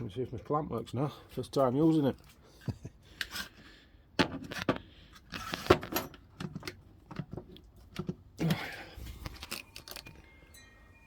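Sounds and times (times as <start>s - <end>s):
clicks knocks and scraping: 4.2s - 8.6s.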